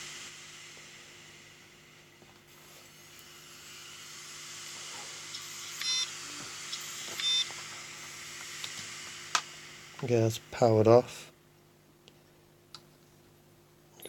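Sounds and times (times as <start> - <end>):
hard drive hiss: 0.0 - 11.4
short high beeps: 6.9 - 7.5.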